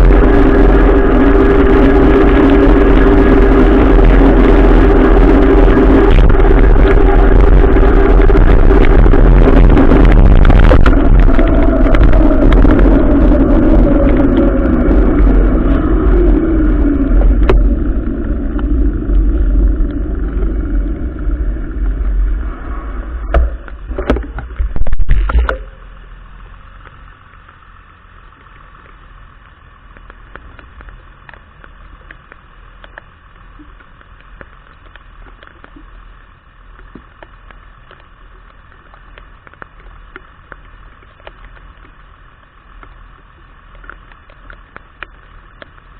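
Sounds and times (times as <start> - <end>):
vehicle engine slowing: 0.0 - 24.0
faint steady hiss: 0.0 - 45.9
rain: 0.0 - 45.9.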